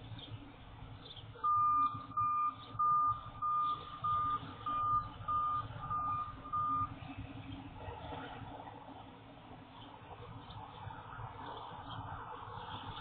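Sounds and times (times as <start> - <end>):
low background rumble: 0.0 - 13.0
reversing alarm beeping: 1.4 - 7.0.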